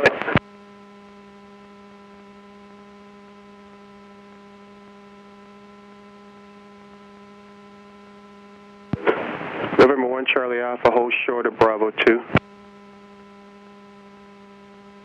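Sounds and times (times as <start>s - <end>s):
electrical hum: 0.0s - 15.0s.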